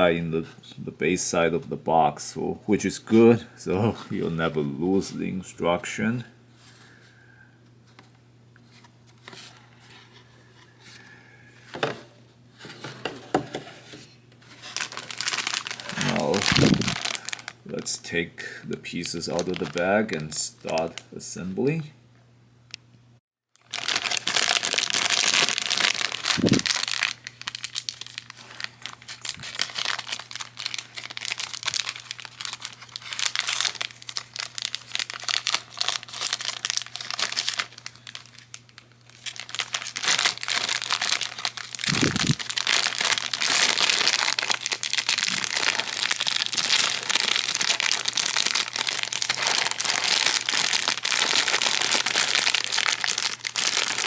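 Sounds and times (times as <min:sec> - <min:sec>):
plastic bag crinkling: 0:14.4 - 0:18.2, 0:19.0 - 0:21.6, 0:23.6 - 0:54.0.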